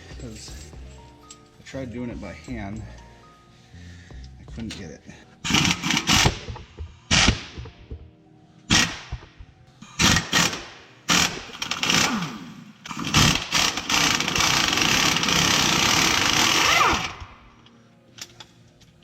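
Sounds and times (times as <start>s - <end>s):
impact wrench hammering: 5.5s - 8.1s, 8.7s - 17.3s.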